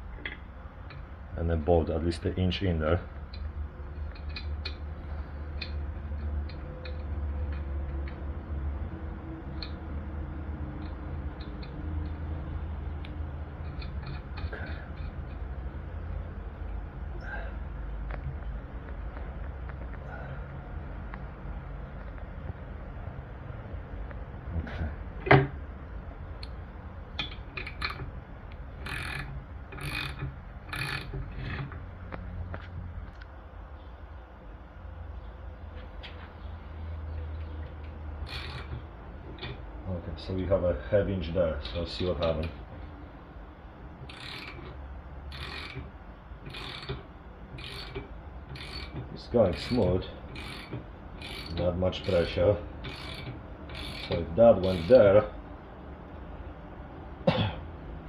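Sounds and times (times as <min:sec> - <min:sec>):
steady low hum: 0:00.0 - 0:58.0
metal clicks and creaks: 0:00.1 - 0:01.1, 0:03.0 - 0:17.2, 0:18.0 - 0:23.2, 0:24.0 - 0:33.4, 0:37.1 - 0:40.6, 0:41.4 - 0:55.3
rasping ratchet strokes: 0:03.3 - 0:08.4, 0:10.6 - 0:16.3, 0:26.3 - 0:32.6, 0:37.7 - 0:39.7, 0:41.7 - 0:55.3.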